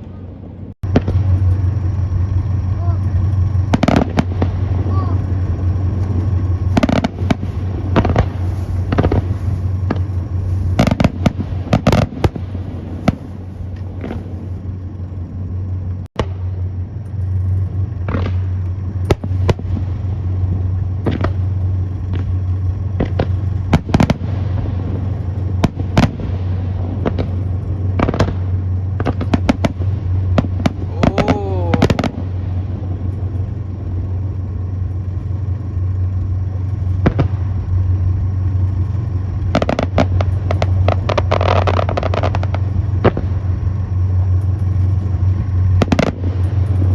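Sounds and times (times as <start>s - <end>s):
fireworks bursting: 0.0s - 46.9s
steady low hum: 0.0s - 46.9s.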